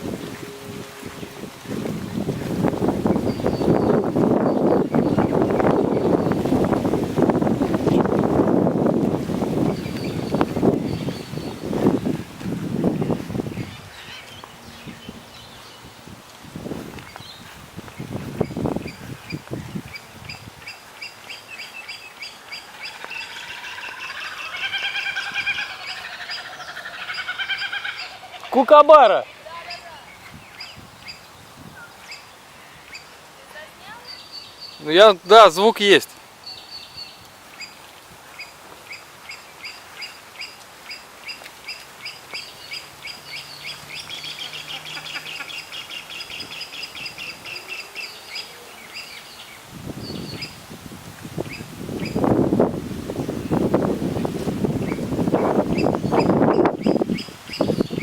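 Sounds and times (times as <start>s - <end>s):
kookaburra cackling: 22.6s - 29.0s, 44.0s - 48.6s.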